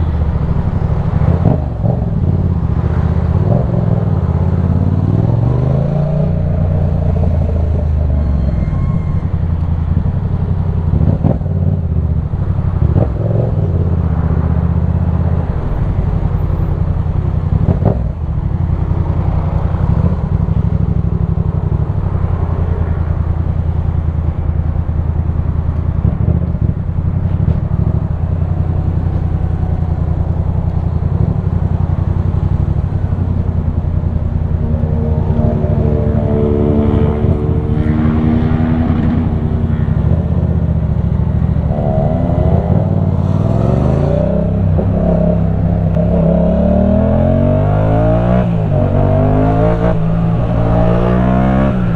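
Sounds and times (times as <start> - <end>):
motorcycle engine running: 0.0 - 51.9.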